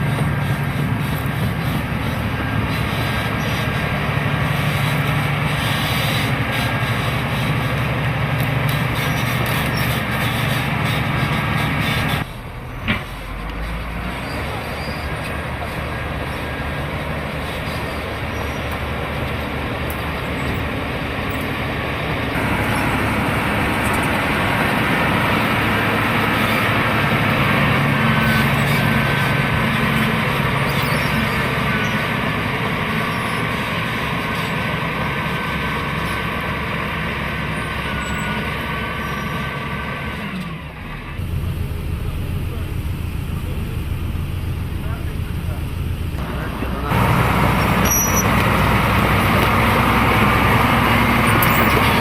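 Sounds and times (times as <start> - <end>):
bulldozer diesel engine running: 0.0 - 52.0.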